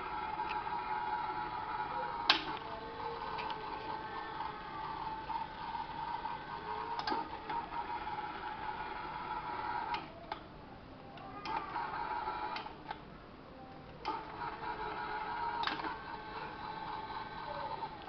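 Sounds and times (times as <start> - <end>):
small electric motor whining: 14.1 - 18.0.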